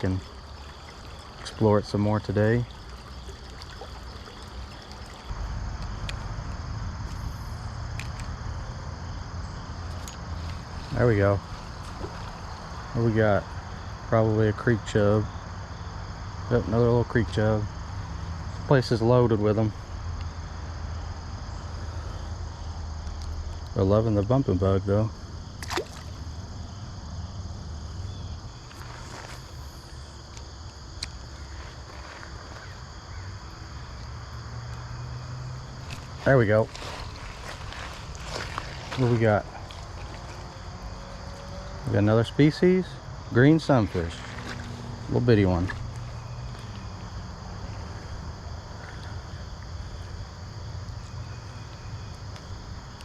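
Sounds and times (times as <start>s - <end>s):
low steady rumble: 0.0s - 14.6s
insects chirring: 0.0s - 53.0s
outdoor background noise: 0.0s - 53.0s.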